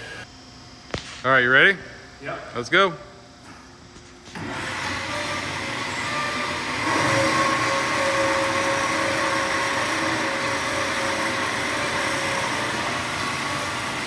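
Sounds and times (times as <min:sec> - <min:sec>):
bandsaw cutting: 0:04.4 - 0:14.0.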